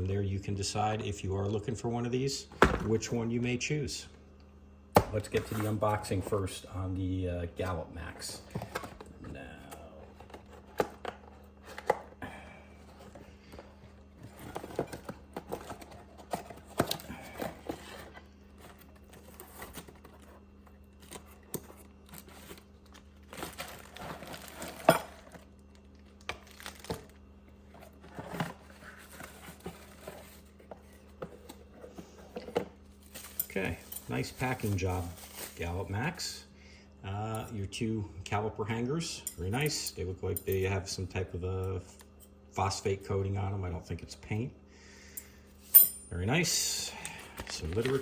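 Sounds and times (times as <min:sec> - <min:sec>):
cardboard tearing: 0:18.8 - 0:25.4, 0:47.4 - 0:48.0
packing material crinkling: 0:18.8 - 0:30.6, 0:33.0 - 0:35.8, 0:47.2 - 0:48.0.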